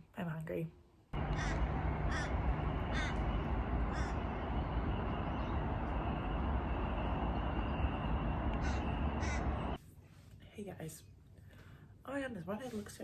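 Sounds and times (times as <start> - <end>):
crow-like caws: 1.2 - 4.8, 8.6 - 9.8
steady rushing noise: 1.2 - 9.8.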